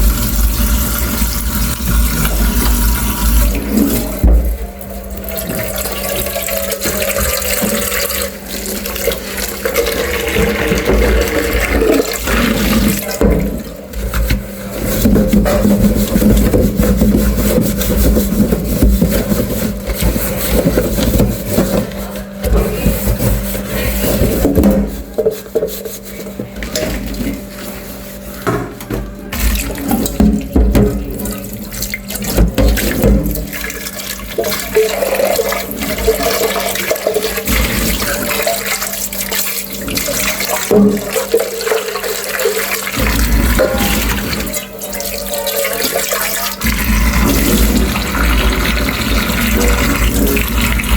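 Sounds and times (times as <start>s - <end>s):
tap water running into sink: 0.0s - 25.8s, 28.4s - 50.9s
dishes clinking and knocking: 28.4s - 31.5s.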